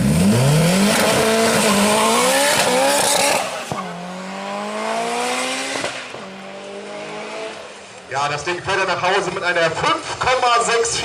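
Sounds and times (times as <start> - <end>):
car engine accelerating hard: 0.0 - 7.8.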